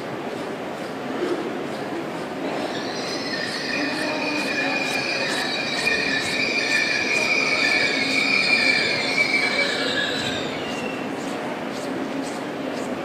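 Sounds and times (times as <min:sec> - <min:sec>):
train rumble: 0:00.0 - 0:13.0
train brakes squealing: 0:02.5 - 0:11.1.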